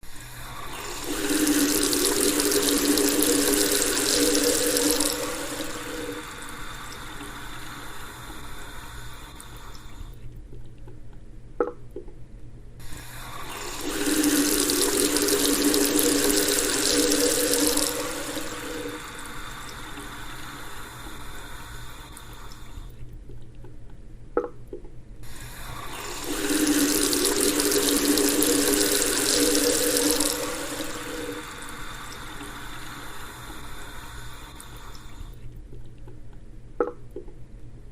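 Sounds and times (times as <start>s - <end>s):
faucet running into sink: 0.4s - 7.8s, 12.8s - 20.6s, 25.3s - 35.1s.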